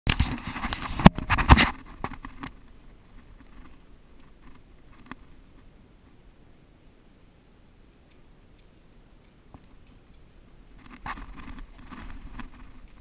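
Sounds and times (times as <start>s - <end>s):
close rustling and scraping: 0.1s - 6.2s, 8.5s - 13.0s
faint clicks: 8.0s - 13.0s.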